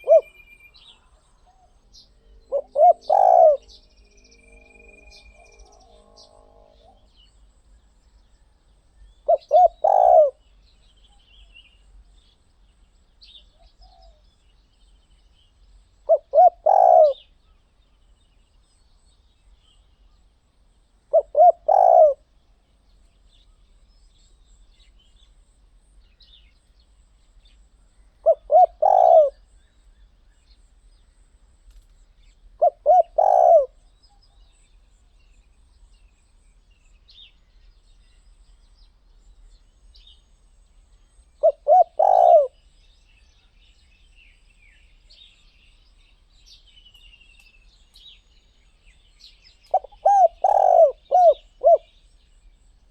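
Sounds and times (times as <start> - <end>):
dove cooing: 0.0 - 1.8, 2.4 - 7.0, 9.2 - 10.4, 16.1 - 17.3, 21.1 - 22.3, 28.2 - 29.5, 32.6 - 33.9, 41.4 - 42.6, 49.7 - 52.0
small birds chirping faintly: 0.0 - 52.9.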